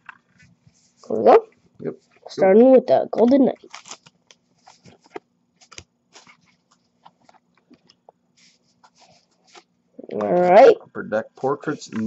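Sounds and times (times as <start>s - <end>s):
faint low hum: 0.0s - 12.0s
trading cards flipped by hand: 3.2s - 9.7s.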